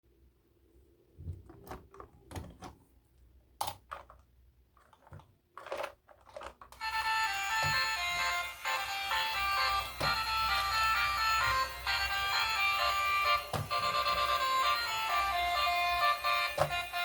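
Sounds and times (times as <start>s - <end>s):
toy packaging crinkling: 3.6s - 17.0s
melodic music: 6.8s - 17.0s.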